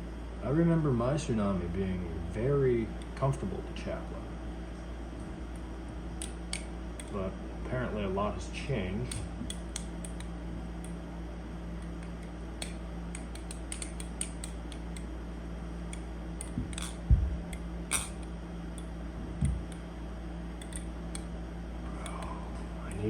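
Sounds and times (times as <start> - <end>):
steady low hum: 0.0 - 23.0
butterfly knife metallic clicks: 11.8 - 15.1, 20.6 - 21.3.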